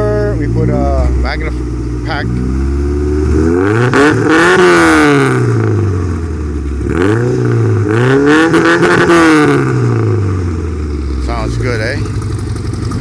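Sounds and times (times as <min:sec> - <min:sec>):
car engine revving: 0:00.0 - 0:13.0.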